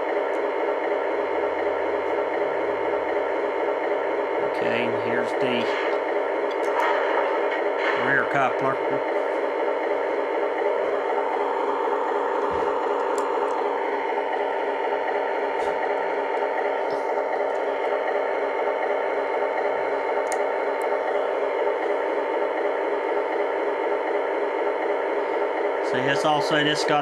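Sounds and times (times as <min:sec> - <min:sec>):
diesel engine rumble through small speaker: 0:04.5 - 0:05.8.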